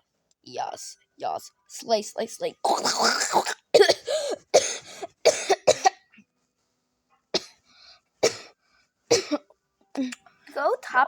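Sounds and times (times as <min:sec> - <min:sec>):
person coughing: 0:02.7 - 0:06.0, 0:08.2 - 0:09.4.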